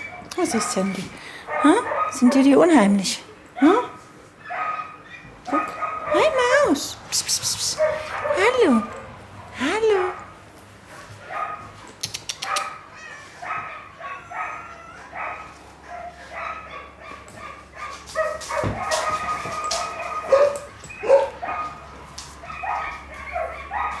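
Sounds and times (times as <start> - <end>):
dog yelping: 0.0 - 2.7, 3.6 - 6.8, 7.6 - 9.2, 11.3 - 11.6, 12.2 - 24.0
dog whining and whimpering: 12.4 - 15.4.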